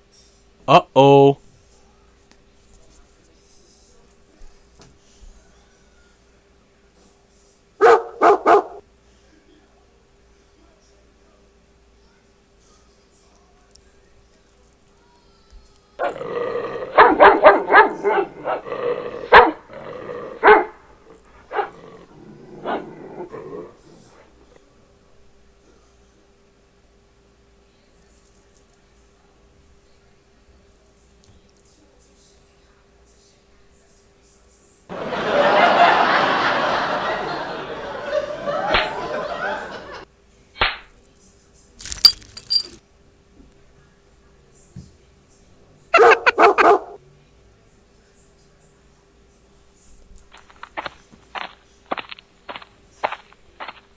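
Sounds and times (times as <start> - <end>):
dog barking: 7.8 - 8.8, 17.0 - 18.6, 20.4 - 20.8, 37.7 - 40.0, 46.0 - 47.0
dog growling: 16.0 - 17.2, 18.0 - 20.4, 21.6 - 23.8
glass breaking crash: 41.8 - 42.8
glassy clinks: 41.8 - 42.8.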